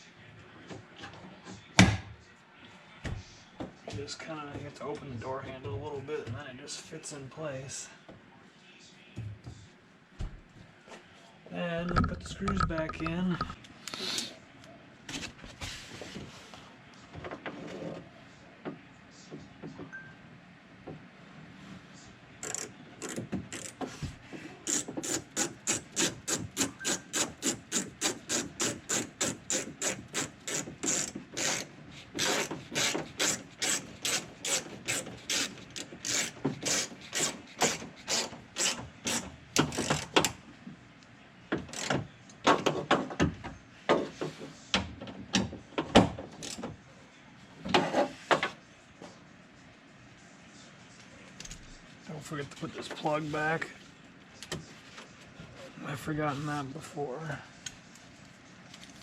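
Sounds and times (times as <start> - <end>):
hand ratchet clicking: 22.4 - 23.8, 24.7 - 40.3.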